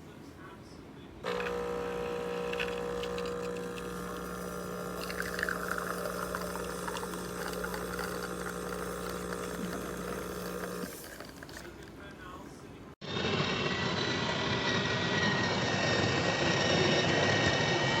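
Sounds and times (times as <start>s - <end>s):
espresso machine pump humming: 1.2s - 12.0s
liquid pouring: 1.3s - 12.0s.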